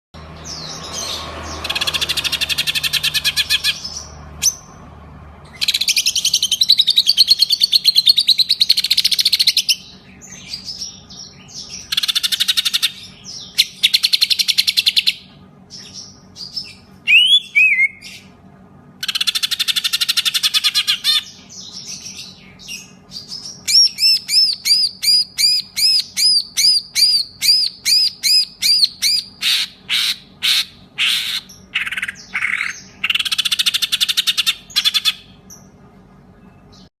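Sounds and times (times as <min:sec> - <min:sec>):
bird chattering trills: 0:00.4 - 0:04.8, 0:05.5 - 0:18.4, 0:19.0 - 0:35.8
bird looping whistled notes: 0:11.8 - 0:15.2, 0:16.0 - 0:18.2, 0:19.0 - 0:35.4.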